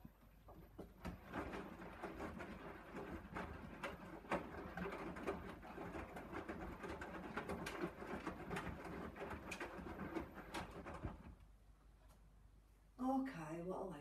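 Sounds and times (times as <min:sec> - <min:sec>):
wet laundry tumbling and knocking: 0:00.0 - 0:11.4
washing machine drum turning: 0:00.6 - 0:11.4.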